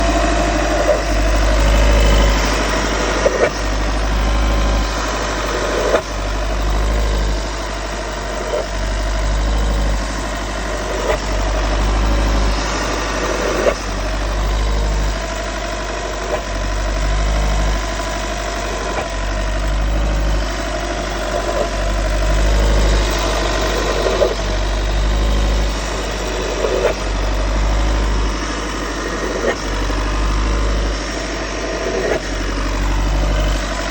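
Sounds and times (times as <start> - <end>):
van engine low rumble: 0.0 - 33.9.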